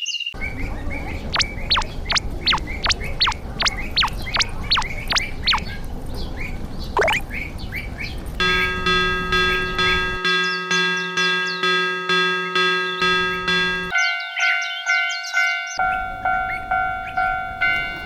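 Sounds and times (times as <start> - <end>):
music: 8.4 - 15.8.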